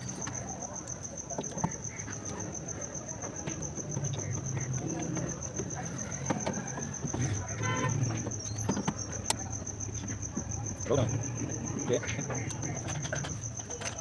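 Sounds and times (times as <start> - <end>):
cricket chirping: 0.0 - 14.0
faint background voices: 0.0 - 14.0
light clicks: 3.5 - 14.0.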